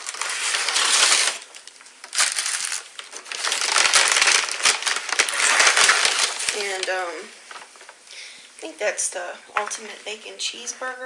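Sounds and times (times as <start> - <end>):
paper bag rustling and crinkling: 0.0 - 8.0.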